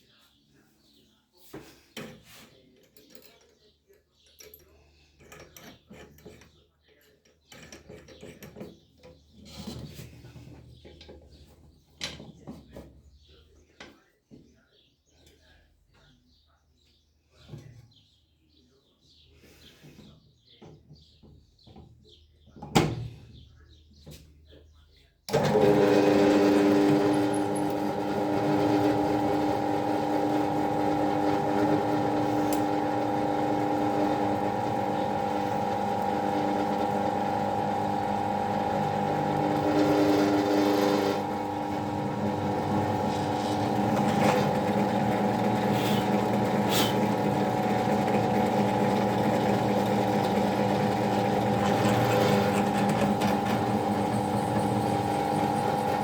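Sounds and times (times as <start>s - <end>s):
electric power tool motor: 25.3s - 56.0s.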